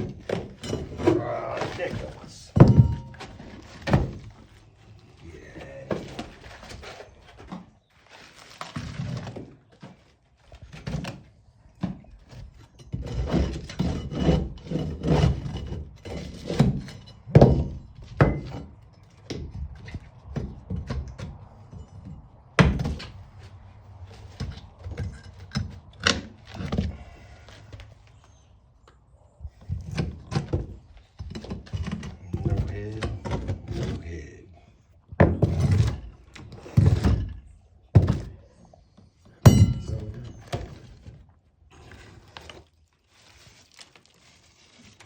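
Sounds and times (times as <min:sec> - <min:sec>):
wooden knocks and cracks: 0:00.0 - 0:04.5, 0:08.6 - 0:23.2
scraping rasp: 0:12.3 - 0:18.7.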